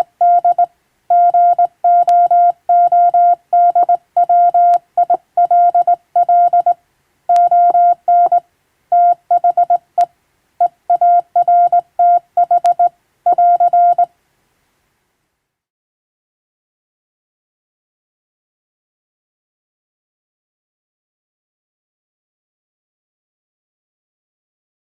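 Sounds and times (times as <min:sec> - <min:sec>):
morse code tone: 0:00.0 - 0:10.1, 0:10.9 - 0:14.1.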